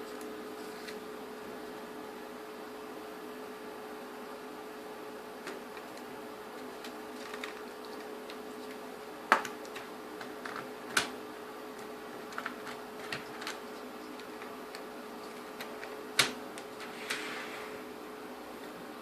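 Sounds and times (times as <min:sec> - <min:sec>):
faint hum: 0:00.0 - 0:19.0
plastic parts clicking: 0:12.3 - 0:13.6.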